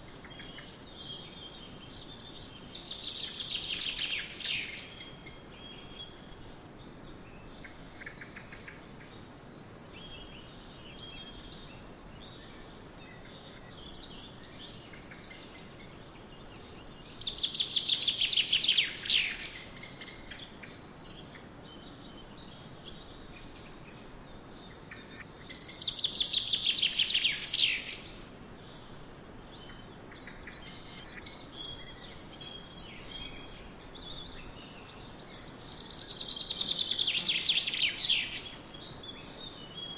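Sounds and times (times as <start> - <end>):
faint steady hiss: 0.0 - 39.9
scattered bird chirps: 24.7 - 39.9.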